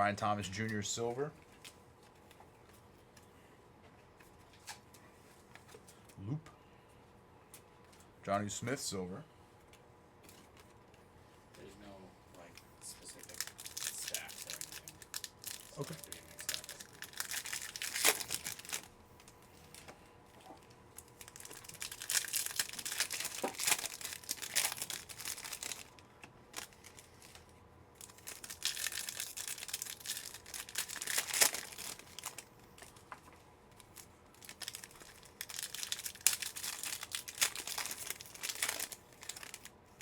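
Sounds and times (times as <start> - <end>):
foil wrappers tearing and crinkling: 13.0 - 18.9, 21.0 - 33.0, 33.7 - 39.7.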